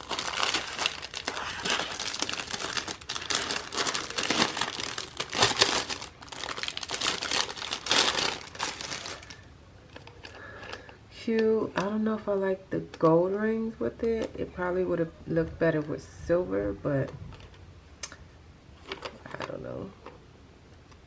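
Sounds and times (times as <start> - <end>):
crinkly packaging unwrapped: 0.0 - 11.0.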